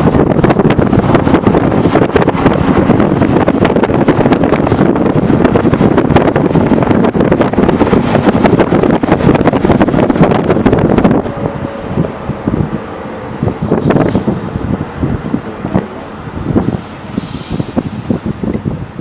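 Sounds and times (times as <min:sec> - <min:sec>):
truck engine running: 0:00.0 - 0:19.0
wind buffeting on microphone: 0:00.0 - 0:19.0.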